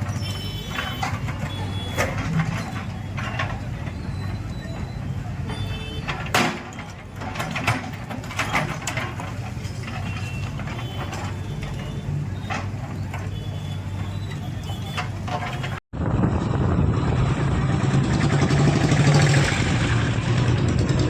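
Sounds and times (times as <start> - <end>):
diesel engine of heavy machinery: 0.0 - 21.0
debris knocking and clattering: 5.8 - 15.8.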